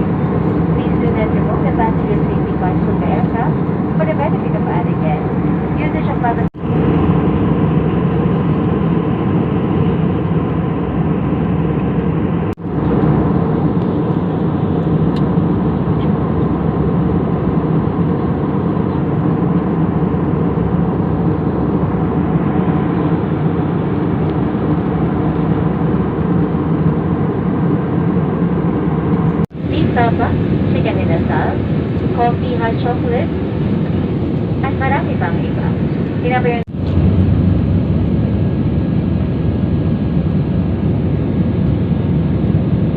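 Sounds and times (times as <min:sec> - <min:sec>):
airliner engine drone: 0:00.0 - 0:42.9
rushing air: 0:33.3 - 0:42.9.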